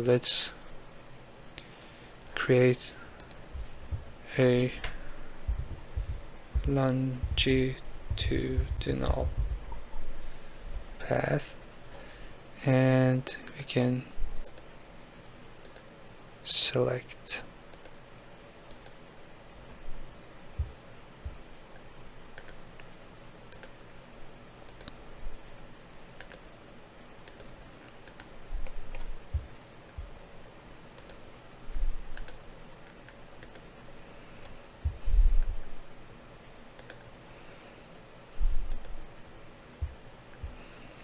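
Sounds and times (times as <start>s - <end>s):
computer mouse clicking: 3.2s - 4.1s, 13.4s - 13.7s, 14.4s - 15.9s, 17.7s - 18.0s, 18.7s - 19.0s, 22.3s - 22.9s, 23.5s - 23.8s, 24.7s - 25.0s, 26.2s - 26.5s, 27.2s - 30.1s, 31.0s - 31.2s, 32.1s - 33.7s, 36.8s - 37.1s, 38.7s - 39.0s.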